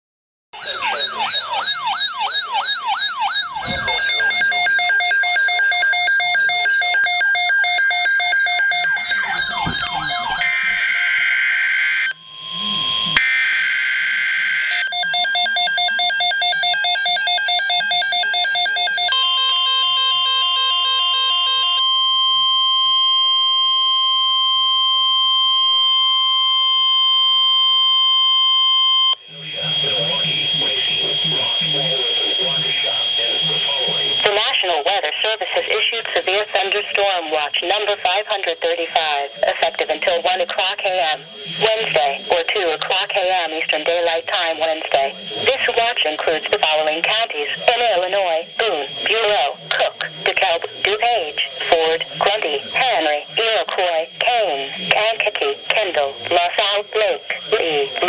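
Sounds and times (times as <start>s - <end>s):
electronic siren sweeps: 0.6s - 23.2s, 27.6s - 34.3s
long steady alert tone: 0.6s - 58.0s
rapid alarm beeping and warbling: 0.6s - 58.0s.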